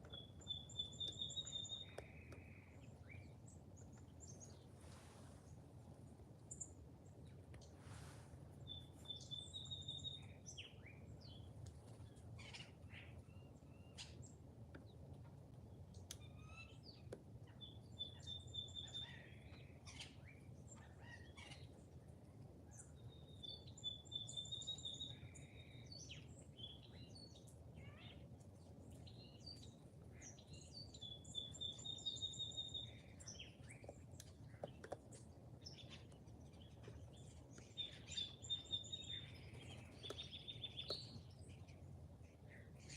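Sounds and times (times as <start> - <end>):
low steady rumble: 0.0 - 18.2
songbirds chirping: 0.0 - 42.9.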